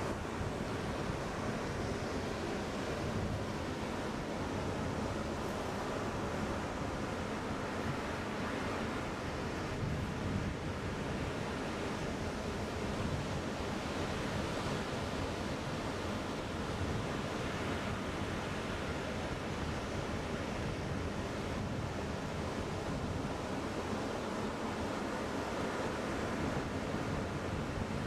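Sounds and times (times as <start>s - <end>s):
ocean surf washing: 0.0s - 28.0s
wind on microphone: 9.6s - 11.4s.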